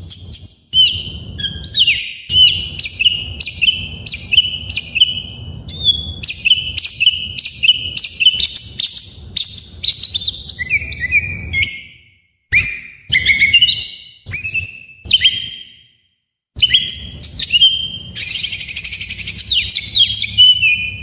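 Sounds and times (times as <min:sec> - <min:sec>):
bird singing whistled notes: 0:00.0 - 0:21.0.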